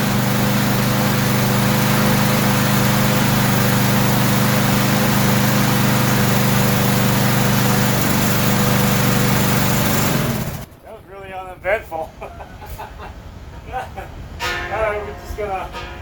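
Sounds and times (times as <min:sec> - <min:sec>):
lawn mower engine running: 0:00.0 - 0:11.0.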